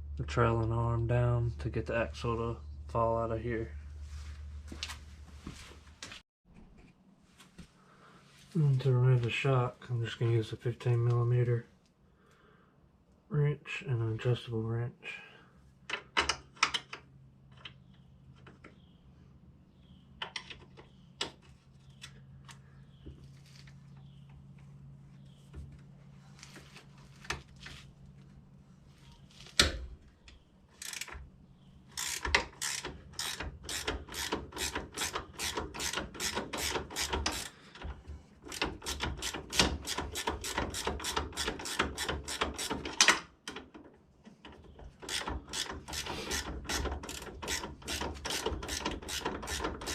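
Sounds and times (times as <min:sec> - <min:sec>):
ratchet wrench clicking: 0:31.9 - 0:37.5, 0:38.5 - 0:42.8, 0:45.1 - 0:49.9.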